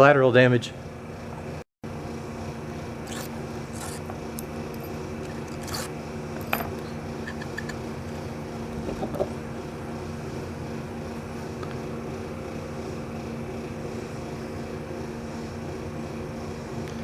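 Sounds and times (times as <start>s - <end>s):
steady machine hum: 0.0s - 17.0s
metal parts scraping and clicking: 3.1s - 4.1s, 4.8s - 7.8s.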